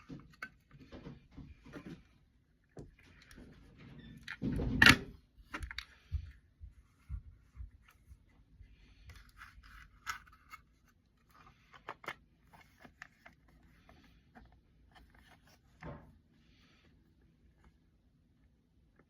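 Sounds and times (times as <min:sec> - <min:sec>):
cassette packaging rustling: 0:09.0 - 0:15.8.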